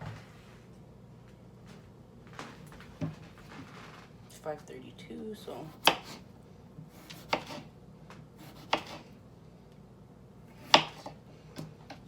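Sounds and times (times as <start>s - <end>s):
knife chopping on cutting board: 5.7s - 6.2s, 6.9s - 7.7s, 8.4s - 9.1s, 10.6s - 12.0s.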